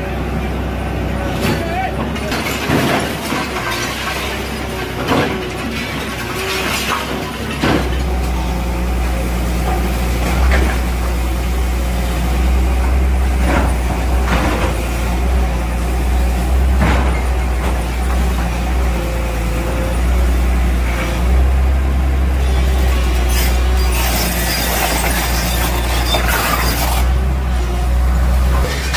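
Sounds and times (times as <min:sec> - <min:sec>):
bulldozer diesel engine rumbling: 0:00.0 - 0:28.9
knocks and crashes: 0:01.4 - 0:08.4, 0:16.7 - 0:18.5.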